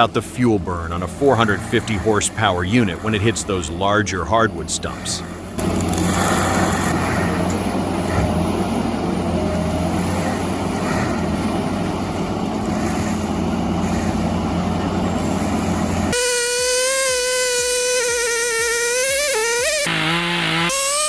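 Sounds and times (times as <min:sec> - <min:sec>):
chainsaw running at high revs: 0:00.0 - 0:09.2, 0:15.1 - 0:21.0
heavy machine engine droning: 0:00.0 - 0:21.0.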